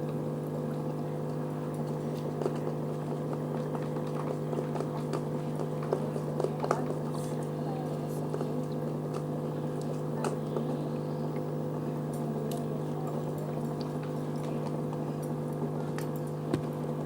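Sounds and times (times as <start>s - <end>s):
low electrical hum: 0.0s - 17.0s.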